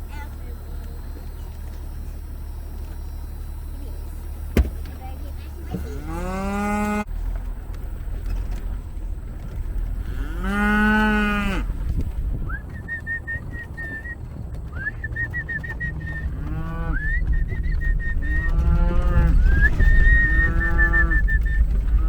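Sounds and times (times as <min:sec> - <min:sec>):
steady low rumble: 0:00.0 - 0:22.0
cattle mooing: 0:05.6 - 0:07.1, 0:09.6 - 0:12.1, 0:15.9 - 0:22.0.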